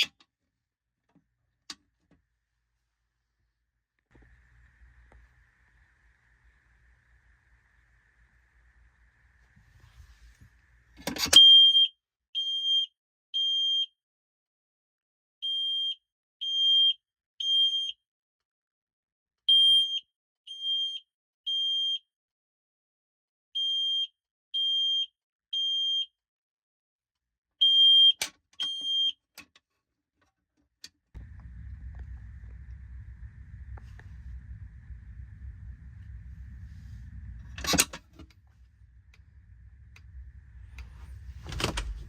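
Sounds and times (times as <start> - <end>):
fire alarm beeping: 11.4 - 13.9, 15.4 - 18.0, 19.5 - 22.0, 23.6 - 26.1, 27.6 - 29.2.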